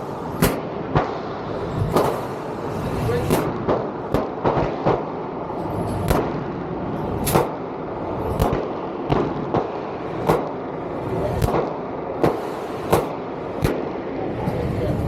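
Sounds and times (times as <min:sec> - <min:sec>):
gunshots: 0:00.0 - 0:14.6.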